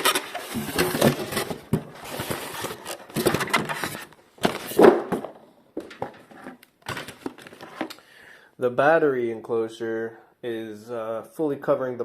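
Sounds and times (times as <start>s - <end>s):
computer parts clicking and knocking: 2.7s - 8.0s.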